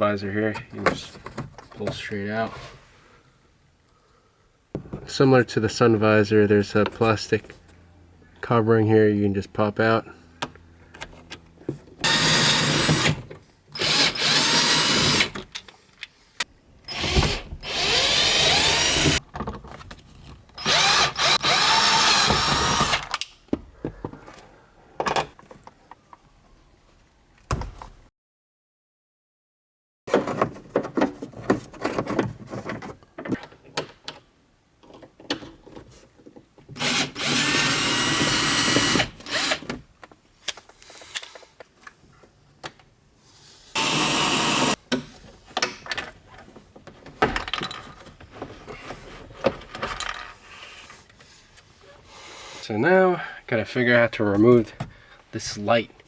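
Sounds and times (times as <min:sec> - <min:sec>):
power drill running: 0:12.0 - 0:13.2, 0:13.8 - 0:15.4, 0:16.9 - 0:19.2, 0:20.6 - 0:23.1, 0:36.8 - 0:39.7, 0:43.6 - 0:44.8
small clicks and handling noise: 0:40.0 - 0:43.0.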